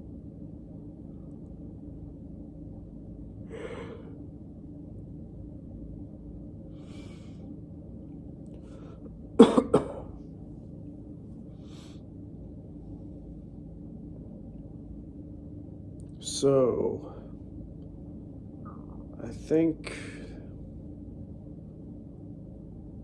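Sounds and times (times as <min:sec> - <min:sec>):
low room hum: 0:00.0 - 0:23.0
faint breath: 0:03.4 - 0:04.2, 0:06.7 - 0:07.6, 0:08.6 - 0:09.1, 0:11.6 - 0:12.1
man coughing: 0:09.4 - 0:10.1.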